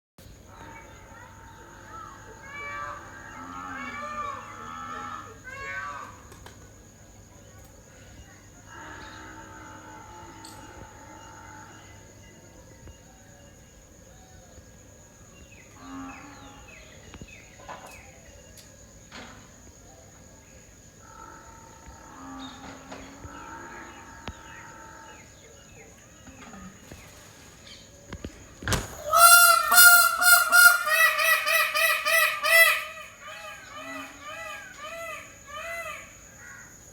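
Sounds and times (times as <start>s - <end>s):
faint bird calls: 21.0s - 36.9s
peacock honking calls: 28.7s - 36.5s.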